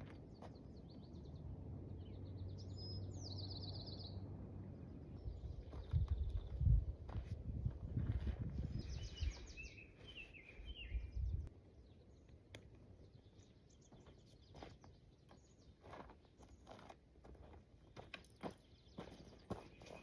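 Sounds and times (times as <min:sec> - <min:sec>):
songbird chirping: 0:00.0 - 0:07.3, 0:08.1 - 0:20.0
footsteps on trail: 0:05.5 - 0:10.9, 0:13.8 - 0:20.0.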